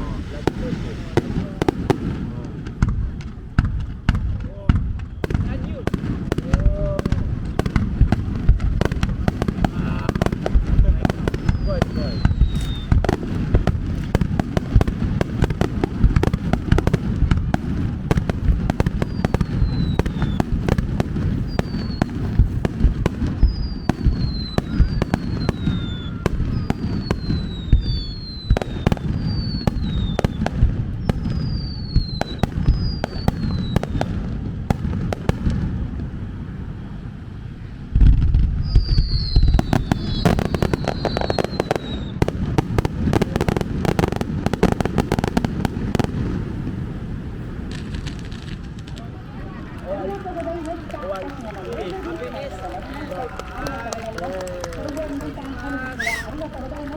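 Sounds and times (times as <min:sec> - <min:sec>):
falling firework whistles: 0:00.0 - 0:02.2, 0:08.8 - 0:17.5, 0:18.2 - 0:34.2, 0:38.0 - 0:46.4, 0:55.8 - 0:56.4
fireworks bursting and crackling: 0:00.0 - 0:56.9.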